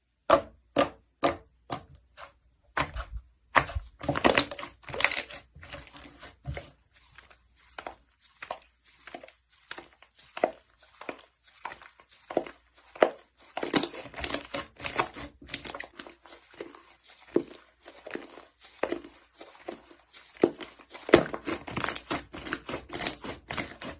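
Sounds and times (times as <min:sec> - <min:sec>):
slime squishing and popping: 0:09.7 - 0:16.0.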